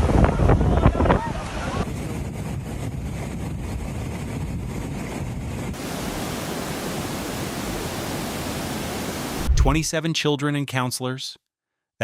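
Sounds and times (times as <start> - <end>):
steady rushing noise: 1.2 - 9.9
smooth hiss: 5.8 - 9.8
low rumble: 9.4 - 9.9.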